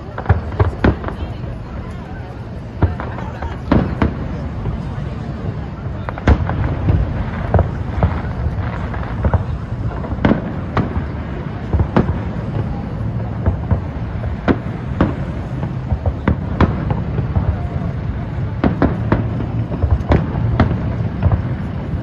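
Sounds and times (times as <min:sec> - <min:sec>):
fireworks bangs: 0:00.0 - 0:22.0.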